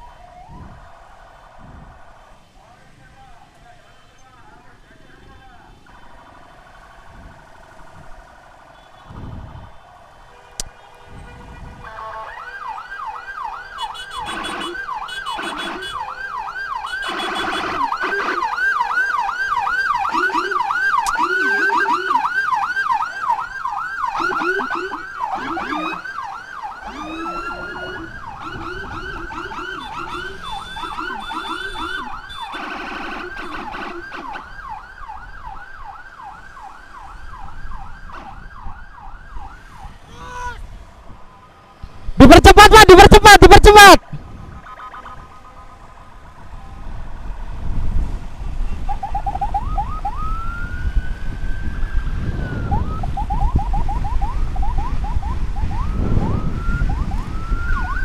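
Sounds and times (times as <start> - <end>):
lower-pitched yelping siren: 0.0 - 2.1, 11.9 - 40.7, 42.2 - 45.9, 48.8 - 58.0
electronic sirens yelping: 11.9 - 40.6, 42.2 - 45.9, 48.8 - 58.0.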